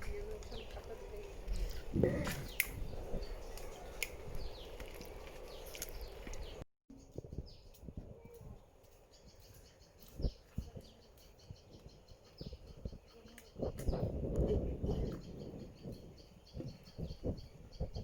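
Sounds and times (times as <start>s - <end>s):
low rural background: 0.0s - 18.0s
small birds chirping: 0.0s - 18.0s.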